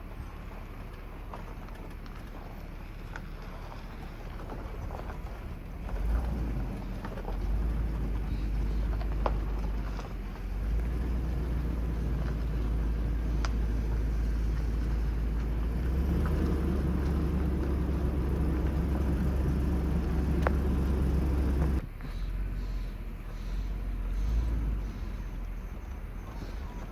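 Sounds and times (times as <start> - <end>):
car road and engine rumble: 0.0 - 26.9
faint ticks: 3.0 - 22.8.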